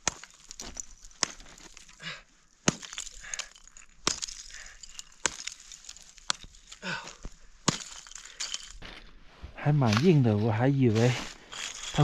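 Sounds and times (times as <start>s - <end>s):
hammer striking ice: 0.0s - 2.0s, 2.6s - 6.8s, 7.6s - 8.8s, 11.5s - 12.0s
ice chips clinking: 7.7s - 8.8s, 11.0s - 12.0s.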